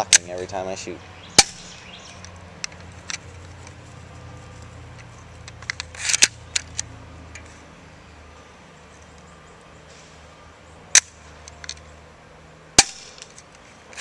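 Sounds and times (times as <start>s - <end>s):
airsoft pistol plastic clicks: 1.4s - 3.8s, 4.6s - 7.6s, 11.0s - 11.9s, 12.8s - 14.0s
pistol slide rasp and snap: 1.4s - 3.8s, 5.4s - 6.9s.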